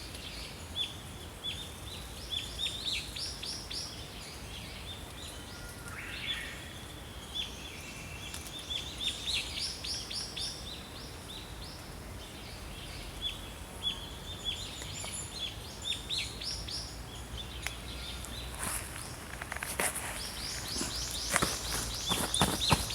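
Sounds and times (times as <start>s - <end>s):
songbirds chirping: 0.0s - 22.9s.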